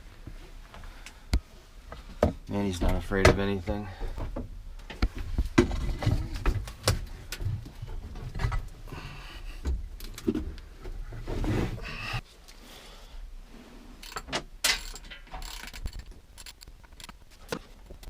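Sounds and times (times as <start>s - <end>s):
knocks and clatter of handled parts: 2.0s - 8.8s, 14.0s - 18.0s.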